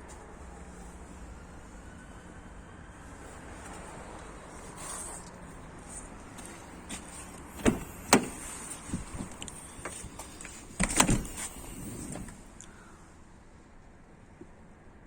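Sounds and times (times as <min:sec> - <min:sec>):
sharp clunks and clicks: 0:07.6 - 0:11.5.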